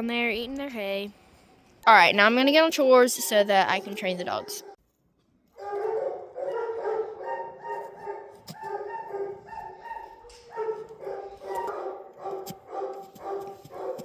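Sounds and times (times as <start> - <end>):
dogs barking: 3.1 - 4.8, 5.6 - 14.0.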